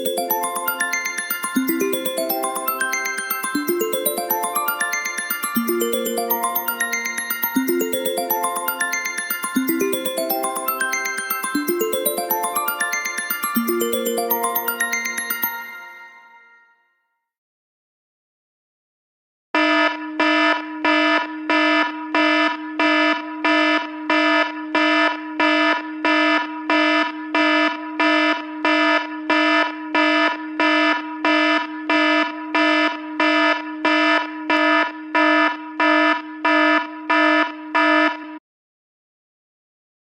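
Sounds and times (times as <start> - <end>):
buzzy electronic ringtone: 0.0 - 16.7.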